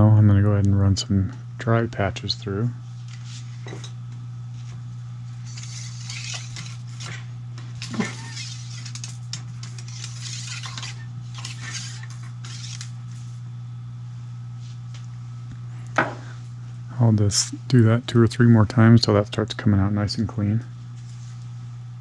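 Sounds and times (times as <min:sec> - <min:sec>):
steady low hum: 0:00.0 - 0:22.0
cleaning rod scraping in rifle barrel: 0:05.4 - 0:07.1, 0:07.8 - 0:12.9.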